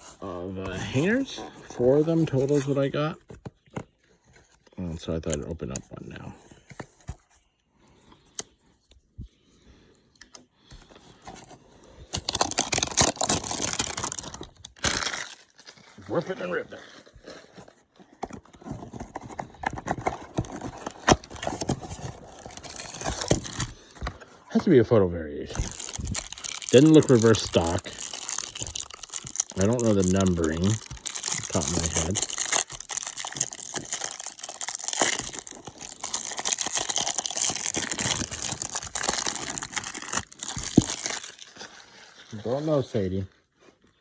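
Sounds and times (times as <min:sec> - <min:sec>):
cards rustling and clicking: 0:12.1 - 0:15.4, 0:19.7 - 0:24.1, 0:25.5 - 0:41.5.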